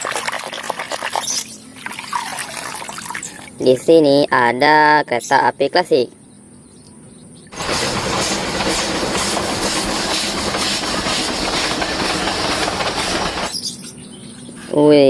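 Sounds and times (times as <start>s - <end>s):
train rushing: 7.6s - 13.7s.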